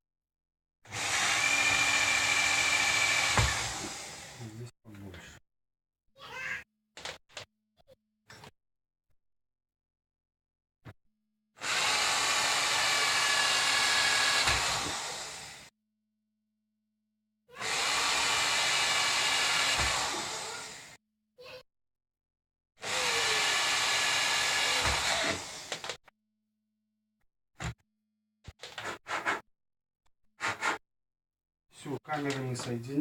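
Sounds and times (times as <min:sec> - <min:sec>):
electric drill boring plastic: 0:00.9 - 0:04.5, 0:11.6 - 0:15.7, 0:17.6 - 0:21.0, 0:22.8 - 0:26.0.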